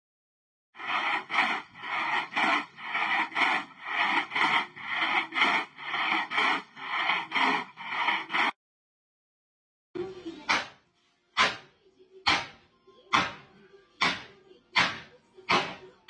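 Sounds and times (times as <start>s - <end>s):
rhythmic rasping scraping: 0.8s - 8.6s.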